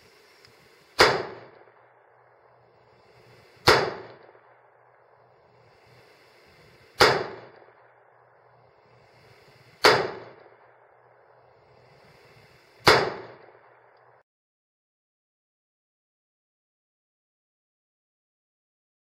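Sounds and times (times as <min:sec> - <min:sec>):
faint background hiss and hum: 0:00.0 - 0:14.2
rifle shots: 0:01.0 - 0:01.8, 0:03.6 - 0:04.4, 0:07.0 - 0:07.6, 0:09.8 - 0:10.4, 0:12.8 - 0:13.5.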